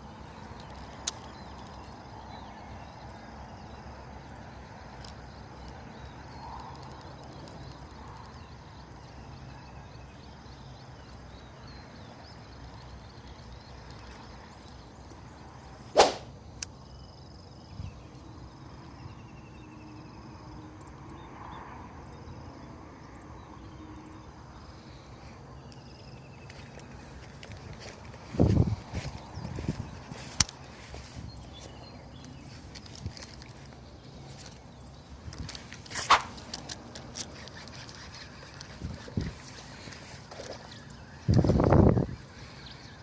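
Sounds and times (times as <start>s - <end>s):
fishing rod swish: 15.9s - 16.4s.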